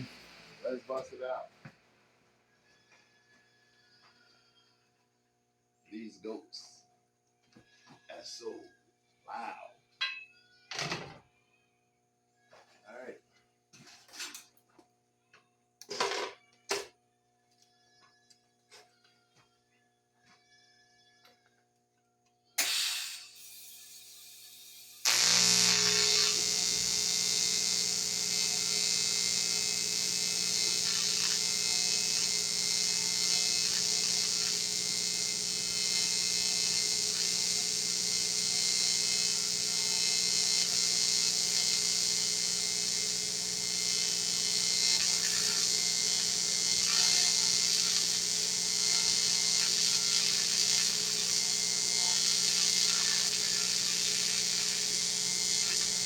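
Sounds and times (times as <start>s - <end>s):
welding arc buzzing: 22.6s - 56.0s.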